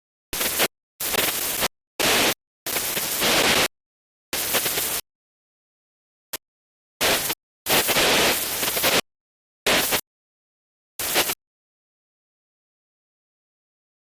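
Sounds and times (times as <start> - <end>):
radio static bursts: 0.4 - 3.7, 4.4 - 5.0, 7.0 - 9.0, 9.7 - 10.0, 11.0 - 11.4.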